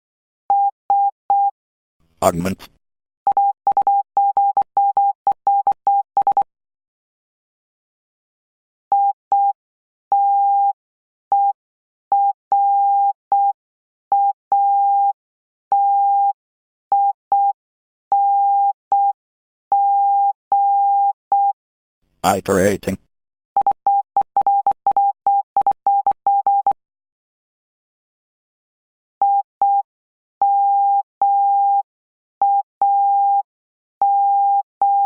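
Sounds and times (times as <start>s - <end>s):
morse code beeps: 23.6s - 26.8s, 34.0s - 35.0s.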